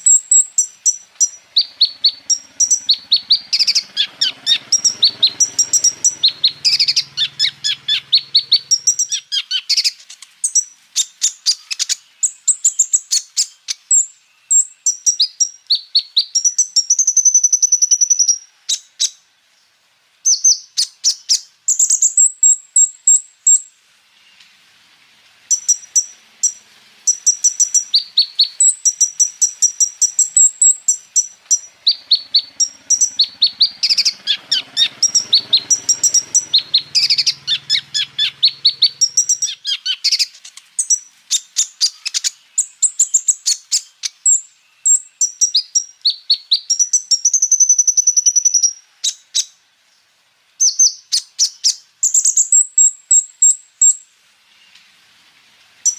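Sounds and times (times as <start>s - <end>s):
sunbird singing: 0.0s - 24.7s, 25.3s - 55.0s.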